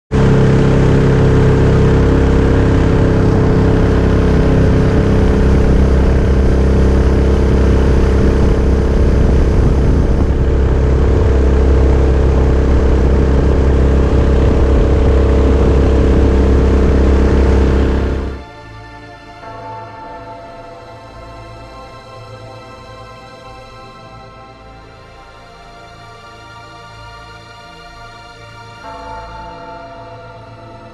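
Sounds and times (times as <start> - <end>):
boat engine running steadily: 0.1 - 18.4.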